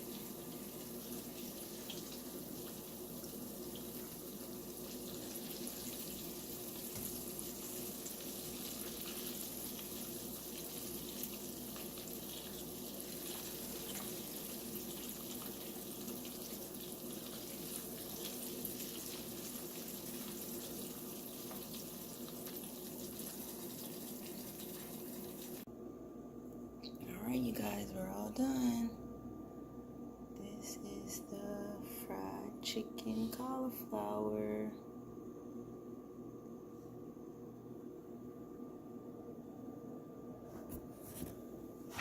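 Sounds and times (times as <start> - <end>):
food deep-frying in oil: 0.0 - 25.7
steady low hum: 25.5 - 42.0.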